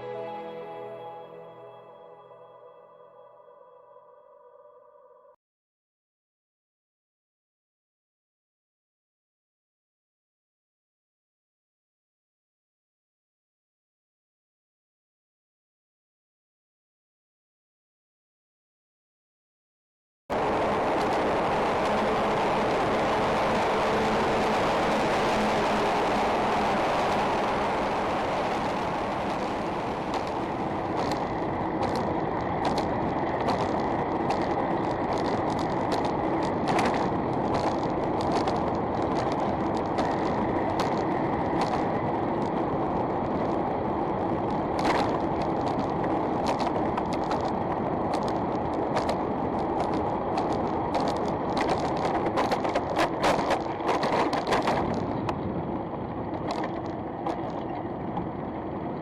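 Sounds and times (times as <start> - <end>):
bicycle rolling and wind noise: 20.3 - 59.0.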